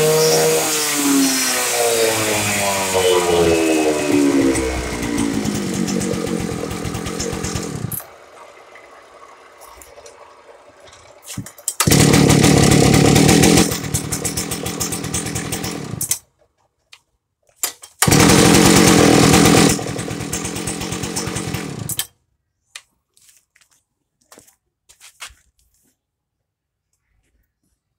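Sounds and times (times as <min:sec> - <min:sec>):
cut-off saw engine revving: 0:00.0 - 0:08.6, 0:11.8 - 0:16.2, 0:18.0 - 0:22.0.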